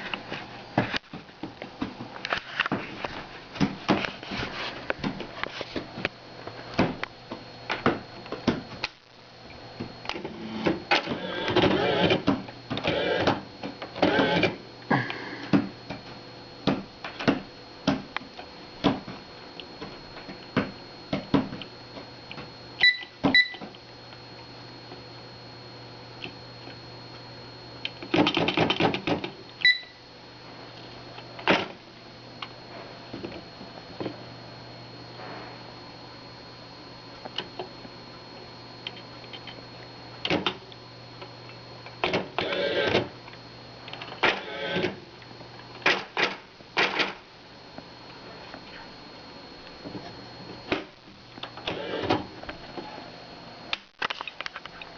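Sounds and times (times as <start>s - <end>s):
typewriter motor hum: 10.1s - 15.6s, 27.9s - 29.8s, 41.8s - 43.2s, 43.9s - 45.0s, 51.4s - 52.4s
short electronic beep: 29.6s - 30.0s.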